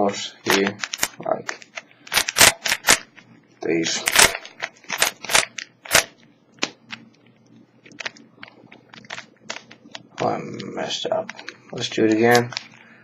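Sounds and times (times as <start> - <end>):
rubik's cube clicking: 2.1 - 3.0, 4.1 - 6.1.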